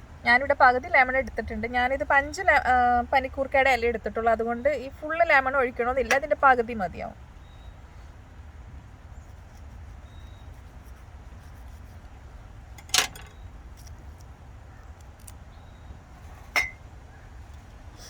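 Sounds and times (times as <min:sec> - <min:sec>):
steady low hum: 0:00.0 - 0:18.0
kitchenware clinking: 0:12.8 - 0:13.4, 0:16.6 - 0:16.8.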